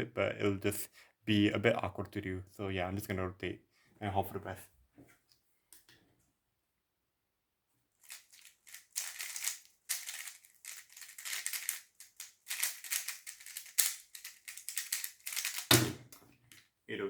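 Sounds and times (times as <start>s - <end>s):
puzzle cube clicking: 8.1s - 16.0s.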